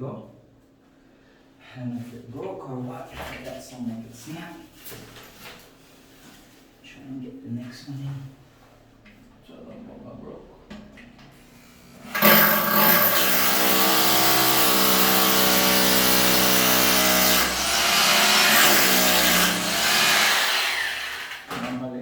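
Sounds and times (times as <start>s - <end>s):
power drill motor running: 12.0s - 21.5s.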